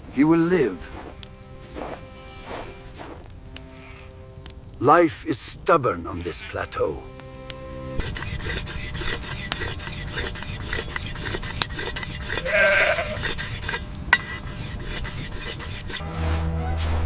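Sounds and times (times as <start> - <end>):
scraping and rustling: 0.6 - 4.2, 8.0 - 17.0
animal bleating: 5.9 - 7.0, 12.3 - 13.4.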